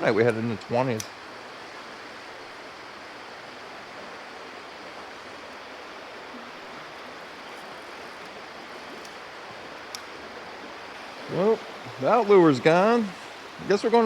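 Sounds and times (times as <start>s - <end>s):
creek water running: 0.0s - 14.0s.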